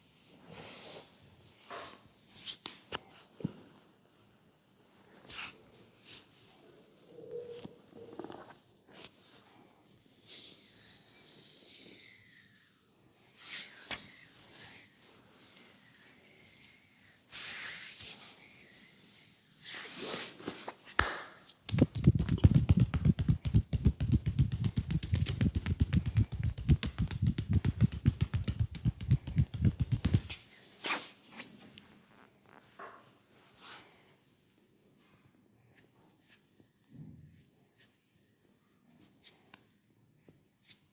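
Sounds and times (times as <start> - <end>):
rapid slapping on leg: 21.0 - 30.4
hands rubbing oiled skin: 21.0 - 30.6.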